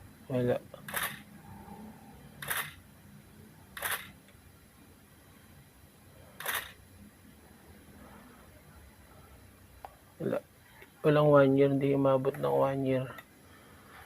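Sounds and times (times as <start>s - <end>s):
camera shutter firing: 0.9s - 1.3s, 2.4s - 2.8s, 3.8s - 4.2s, 6.4s - 6.8s.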